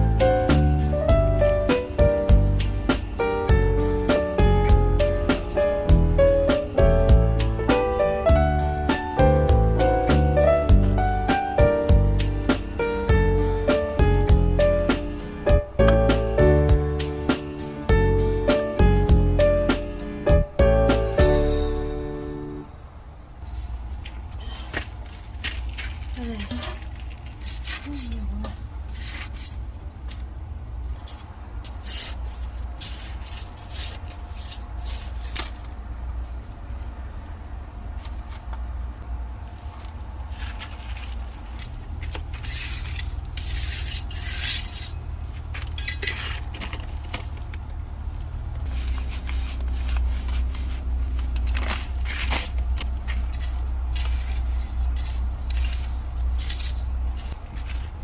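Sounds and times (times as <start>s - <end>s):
steady low rumble: 0.0s - 43.7s
hard objects scraping and clinking: 39.8s - 47.4s, 48.7s - 58.0s.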